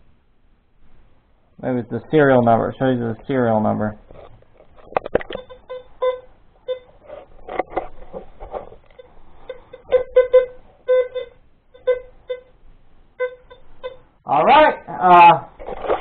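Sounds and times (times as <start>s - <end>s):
metal detector short beeps: 5.4s - 6.9s, 9.5s - 12.5s, 13.2s - 14.0s.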